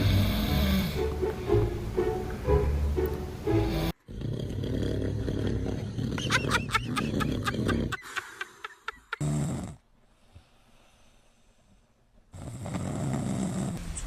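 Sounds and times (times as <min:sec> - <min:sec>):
man snoring: 0:00.0 - 0:01.1, 0:03.6 - 0:08.0, 0:09.1 - 0:09.8, 0:12.3 - 0:13.8.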